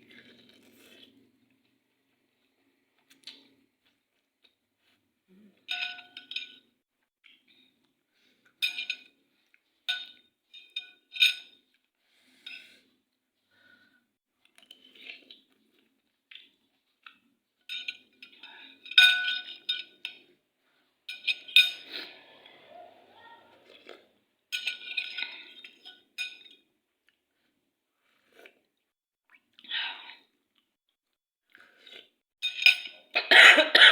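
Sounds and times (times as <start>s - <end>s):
cutlery clinking against plate: 5.7s - 6.6s, 32.4s - 33.9s.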